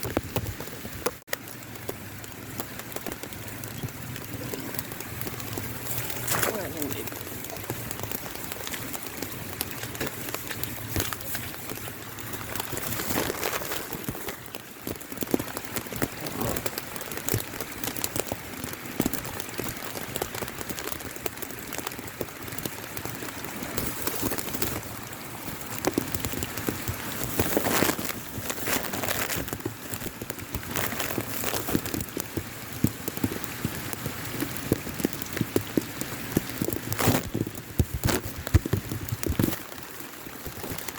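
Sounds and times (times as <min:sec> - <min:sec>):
rain pattering: 0:00.0 - 0:40.9.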